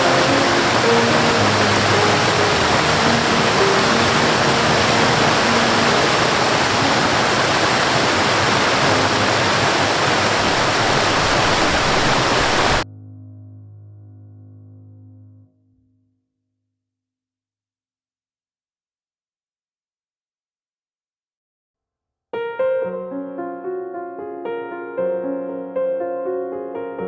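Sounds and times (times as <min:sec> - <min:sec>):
soft background music: 0:00.0 - 0:07.4
waterfall rushing: 0:00.0 - 0:12.8.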